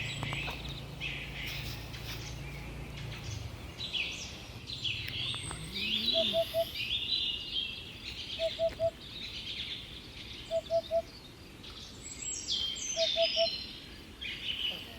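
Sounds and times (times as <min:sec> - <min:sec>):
birds singing and chirping: 0:00.0 - 0:14.9
low three-note bird call: 0:05.6 - 0:06.8.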